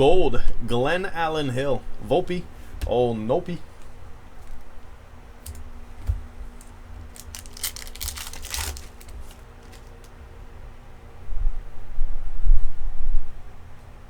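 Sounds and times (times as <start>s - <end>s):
foil pack crinkling: 5.4s - 10.2s
foil tearing rip: 6.6s - 10.1s.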